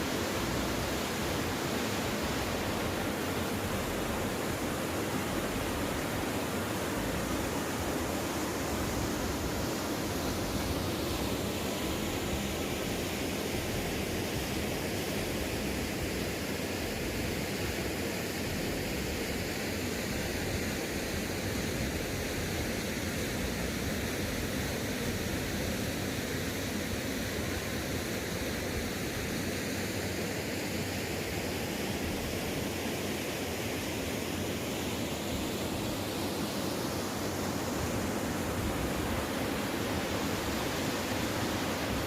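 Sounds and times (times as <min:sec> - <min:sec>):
waterfall rushing: 0:00.0 - 0:42.0.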